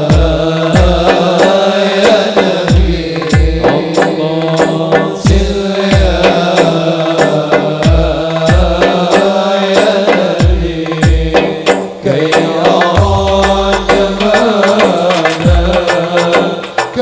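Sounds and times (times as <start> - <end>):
devotional song singing: 0.0 - 17.0
deep drum strikes: 2.4 - 6.6, 10.2 - 17.0.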